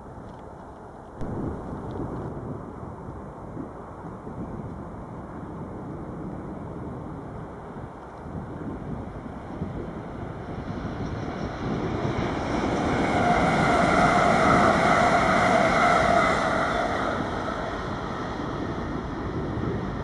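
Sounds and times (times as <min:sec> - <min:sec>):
steady whine: 0:01.2 - 0:02.4, 0:10.2 - 0:20.0
train passing: 0:09.2 - 0:20.0.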